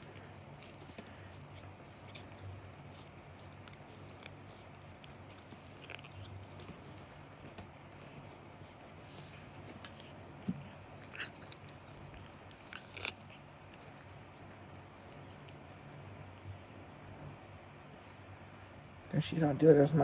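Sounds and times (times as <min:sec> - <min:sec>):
jaw crunches and clicks: 0:00.0 - 0:08.3, 0:09.0 - 0:15.7
pet chewing food: 0:00.0 - 0:18.8.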